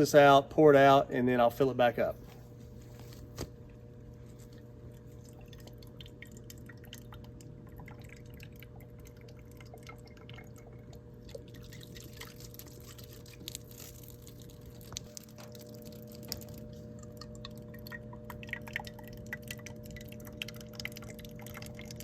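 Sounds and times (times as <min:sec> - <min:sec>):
steady low hum: 0:00.0 - 0:22.0
water dribbling into bottle: 0:04.5 - 0:22.0.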